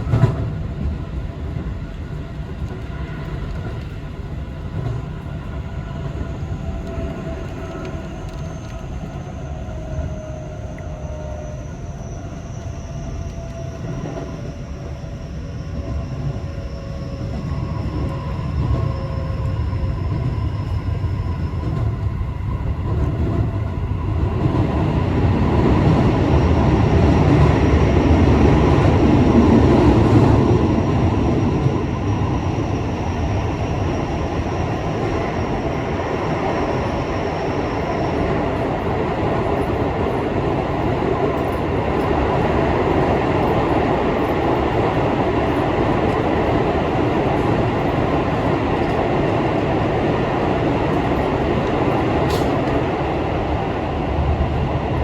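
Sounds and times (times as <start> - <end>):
train wheels rumbling on rails: 0.0 - 55.0.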